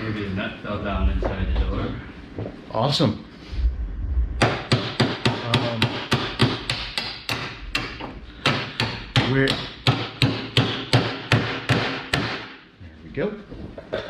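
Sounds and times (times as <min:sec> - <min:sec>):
hammer striking metal: 0:04.4 - 0:12.6.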